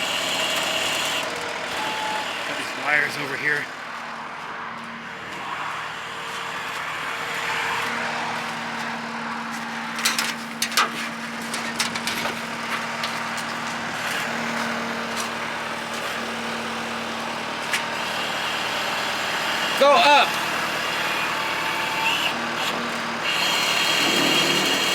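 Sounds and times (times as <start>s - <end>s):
tractor engine idling: 0.0s - 24.9s
sharp clicks and knocks: 10.0s - 13.6s.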